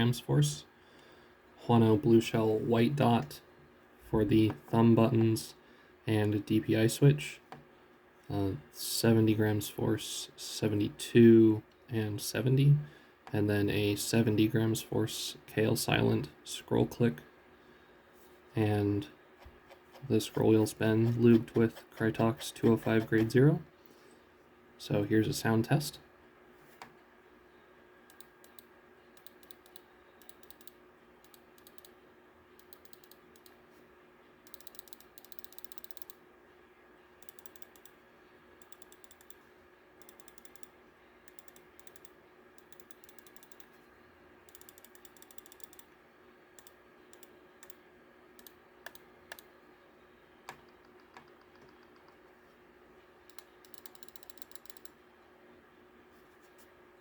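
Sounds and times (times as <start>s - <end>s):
faint steady hum: 0.0s - 57.0s
mouse clicking: 37.2s - 38.0s, 38.6s - 39.4s, 40.0s - 40.7s, 44.5s - 45.9s, 48.4s - 49.5s, 53.3s - 55.0s.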